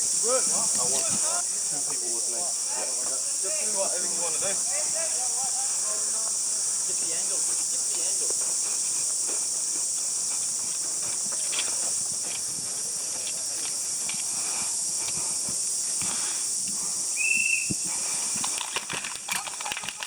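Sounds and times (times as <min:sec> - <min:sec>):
high-pitched insect chorus: 0:00.0 - 0:20.0
sharp clicks: 0:17.7 - 0:20.0.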